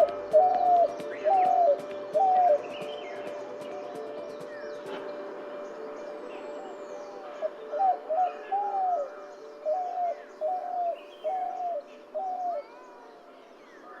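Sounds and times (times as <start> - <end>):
dove cooing: 0.0 - 3.0, 7.4 - 12.6.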